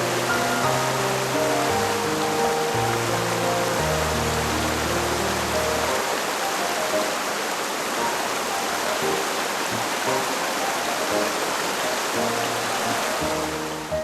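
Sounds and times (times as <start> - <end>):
soft background music: 0.0 - 14.0
stream rushing over rocks: 0.0 - 14.0.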